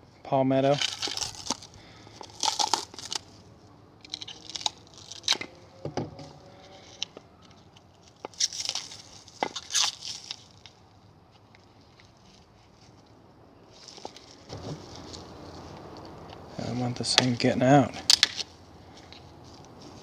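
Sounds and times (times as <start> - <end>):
packaging tearing and crinkling: 0.7 - 3.4, 4.0 - 5.6, 6.7 - 10.8.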